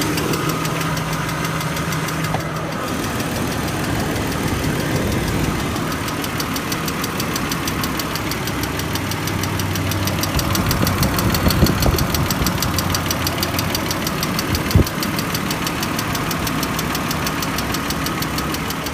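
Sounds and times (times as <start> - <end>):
car engine idling: 0.0 - 18.9
rapid even ticking: 0.0 - 18.9.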